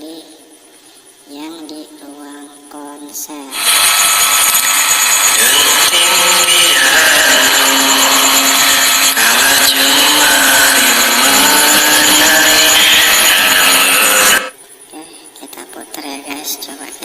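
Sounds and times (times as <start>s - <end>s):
harsh hiss-like noise: 3.4s - 14.9s
man singing with reverb: 3.5s - 14.5s.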